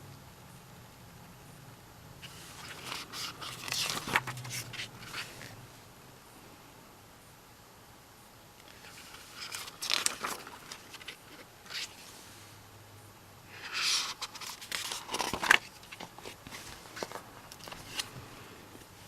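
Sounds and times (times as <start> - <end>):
packaging rustling and crinkling: 2.2 - 5.5, 8.7 - 12.1, 13.6 - 18.9.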